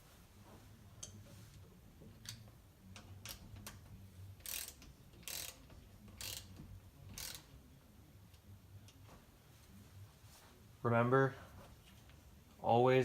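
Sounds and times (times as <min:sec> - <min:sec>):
ratchet wrench ratcheting: 0:03.0 - 0:03.8, 0:04.4 - 0:07.5.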